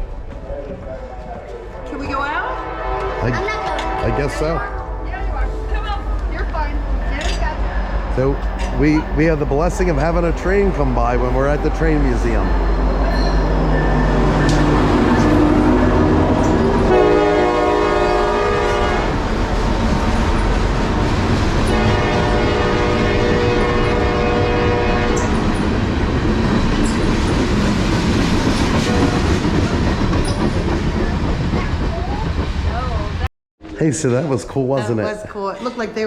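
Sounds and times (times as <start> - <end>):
train rumble: 0.0 - 33.3
train horn blasts: 1.8 - 6.2, 7.9 - 19.4, 20.0 - 25.5
rail clicks: 3.0 - 33.3.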